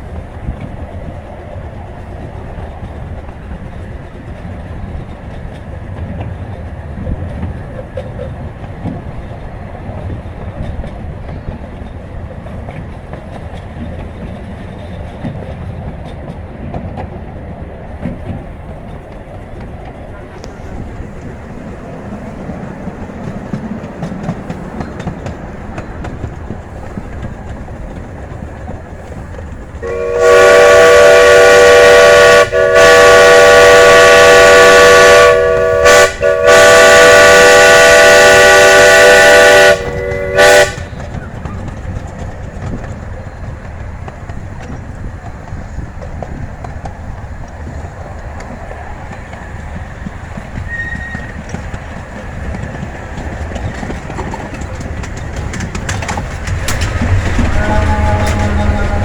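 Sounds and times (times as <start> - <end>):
train rumble and rail clatter: 0.0 - 59.0
steam locomotive chime whistle: 29.8 - 41.3, 50.6 - 51.6, 57.4 - 59.0.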